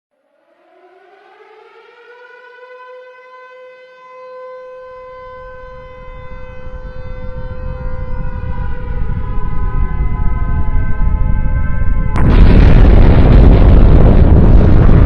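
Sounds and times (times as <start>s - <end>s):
air-raid siren: 0.1s - 15.0s
low rumble: 6.1s - 15.0s.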